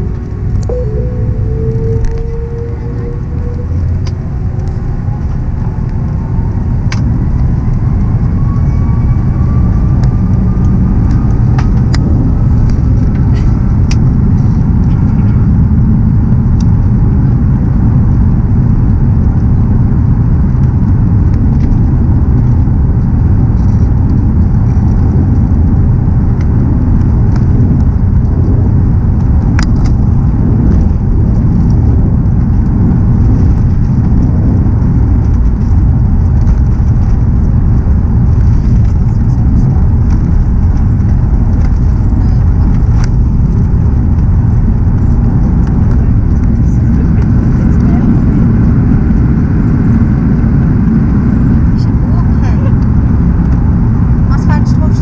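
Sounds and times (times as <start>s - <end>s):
jet engines whining: 0.0s - 16.3s
heavy rumble: 0.0s - 55.0s.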